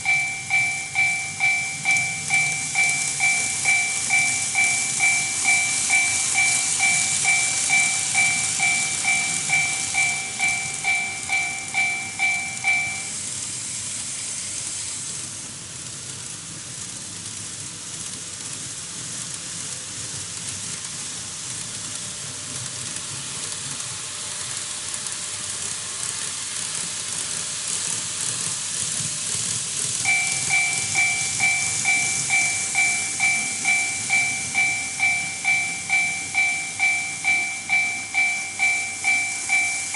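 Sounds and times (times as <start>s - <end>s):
level crossing warning bell: 0.0s - 13.3s, 30.0s - 39.9s
model trains running on track: 0.0s - 39.9s.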